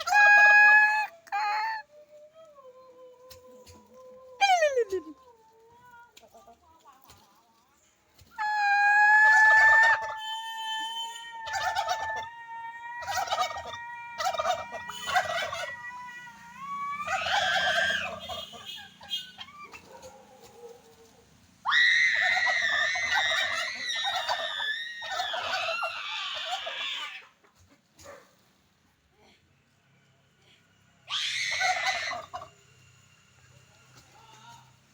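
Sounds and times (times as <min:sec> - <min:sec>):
turkeys gobbling: 0:00.0 - 0:01.8, 0:03.2 - 0:05.2, 0:08.2 - 0:21.3, 0:22.1 - 0:28.1, 0:31.4 - 0:32.6.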